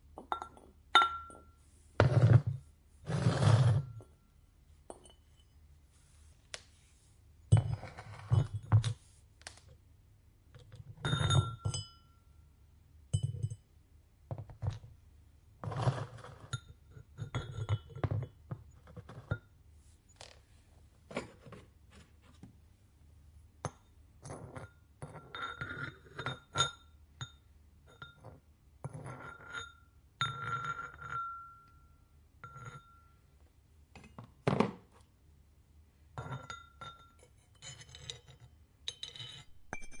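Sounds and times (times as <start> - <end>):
ceramic clinks ringing: 0.2 - 1.6, 11.0 - 12.3, 29.3 - 33.2, 36.2 - 38.1, 38.9 - 40.0.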